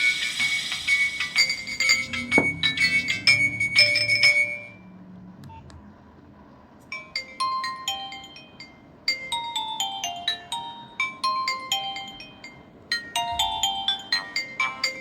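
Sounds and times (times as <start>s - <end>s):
phone ringtone melody: 0.0s - 4.9s, 6.9s - 15.0s.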